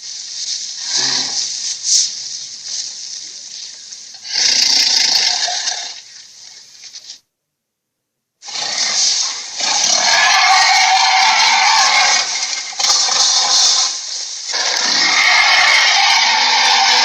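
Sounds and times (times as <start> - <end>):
creature rasping hisses: 0.8 - 1.6.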